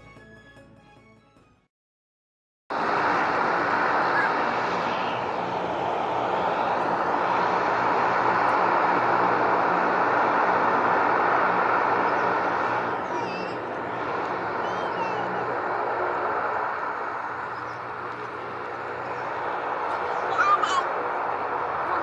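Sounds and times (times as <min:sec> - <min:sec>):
jet engines roaring: 0:02.7 - 0:22.0.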